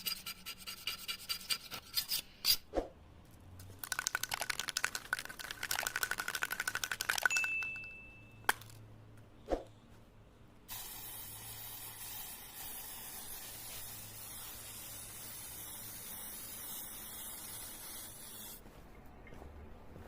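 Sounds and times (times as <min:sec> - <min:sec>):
paint spray hiss: 0:10.7 - 0:18.6.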